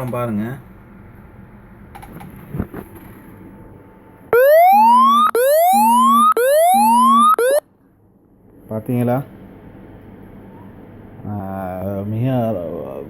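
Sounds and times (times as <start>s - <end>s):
alarm siren whooping: 4.4s - 7.6s.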